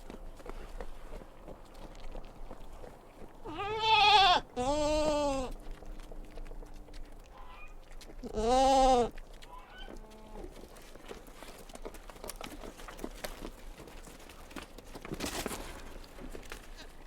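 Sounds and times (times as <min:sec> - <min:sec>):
farm animal bleating: 0:03.4 - 0:05.6, 0:07.3 - 0:10.5.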